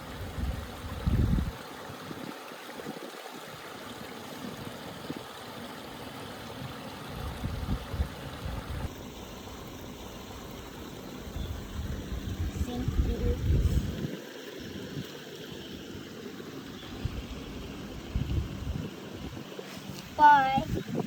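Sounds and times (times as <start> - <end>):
river water rushing: 1.6 - 7.3.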